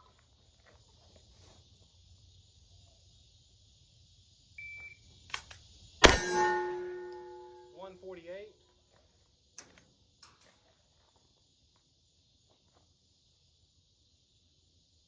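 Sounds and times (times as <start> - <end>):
click from pistol draw: 5.3 - 5.6
loud pistol shot ringing: 6.0 - 7.6.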